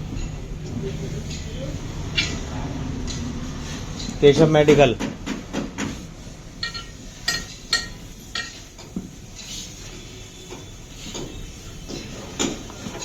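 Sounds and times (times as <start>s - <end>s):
metal tools clinking: 1.2s - 2.5s, 6.6s - 8.6s.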